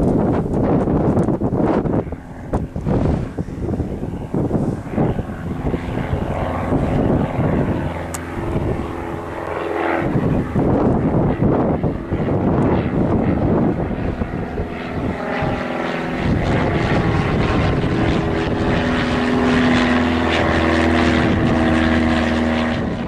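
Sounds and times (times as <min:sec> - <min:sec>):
rough gusty noise: 0:00.0 - 0:14.2
small plane engine droning: 0:00.0 - 0:23.0.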